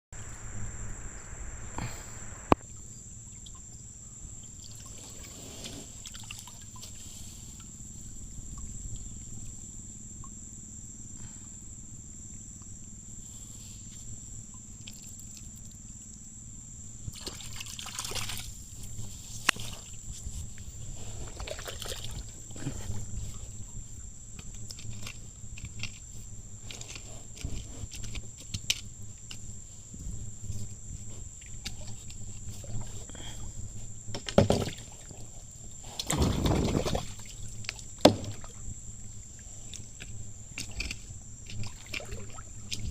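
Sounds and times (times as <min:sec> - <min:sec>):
steady low hum: 0:00.0 - 0:04.6
water trickling and sloshing: 0:03.3 - 0:09.6, 0:17.0 - 0:42.9.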